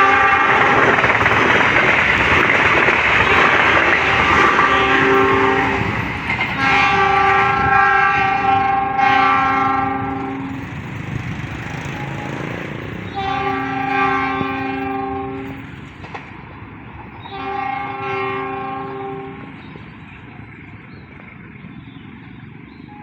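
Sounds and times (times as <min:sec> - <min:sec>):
train air horn blasts: 0:00.0 - 0:01.0, 0:03.2 - 0:10.7, 0:11.8 - 0:15.7, 0:17.3 - 0:19.6
rumble of passing train: 0:00.0 - 0:23.0.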